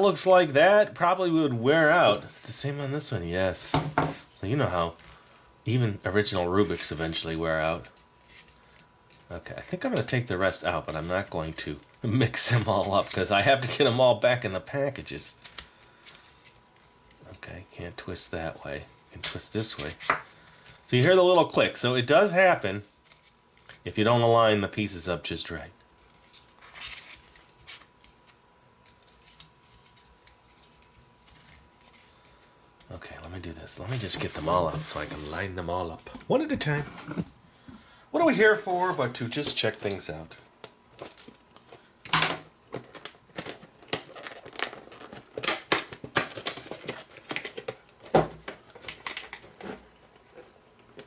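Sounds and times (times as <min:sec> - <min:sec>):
knock on table: 0:03.7 - 0:04.2
packaging crinkling and tearing: 0:42.8 - 0:47.9.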